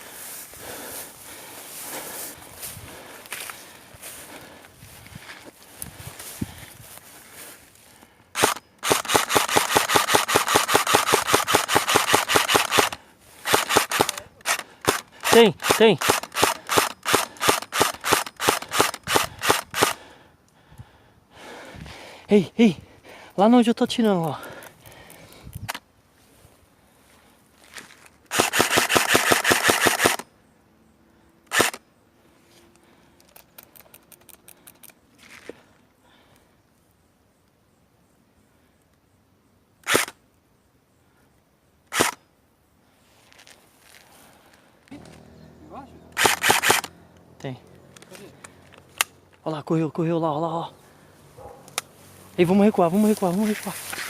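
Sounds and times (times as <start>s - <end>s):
airsoft rifle firing: 8.4s - 20.0s, 28.3s - 30.2s, 31.5s - 31.8s, 46.2s - 47.0s
faint rapid shots: 8.4s - 20.0s, 28.3s - 30.2s, 46.2s - 46.9s.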